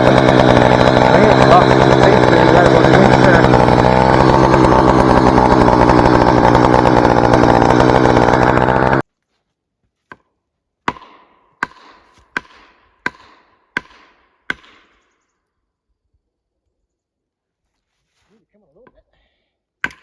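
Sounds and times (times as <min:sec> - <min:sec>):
chainsaw running at full throttle: 0:00.0 - 0:09.0.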